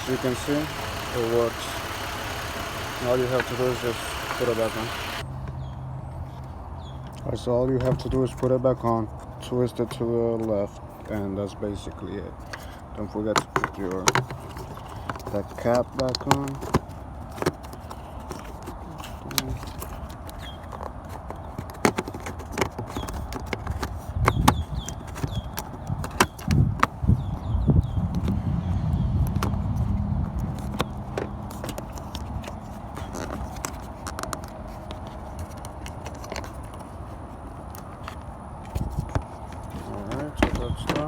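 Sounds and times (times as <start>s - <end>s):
plastic clicks and knocks: 39.0s - 41.0s.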